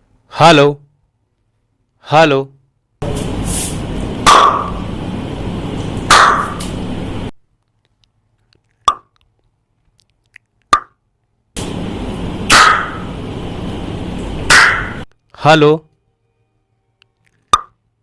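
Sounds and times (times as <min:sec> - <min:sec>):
steady hiss: 0:03.0 - 0:07.3, 0:11.6 - 0:15.0
sharp claps or knocks: 0:04.3 - 0:04.8, 0:06.1 - 0:06.7, 0:12.5 - 0:13.0, 0:14.5 - 0:15.0.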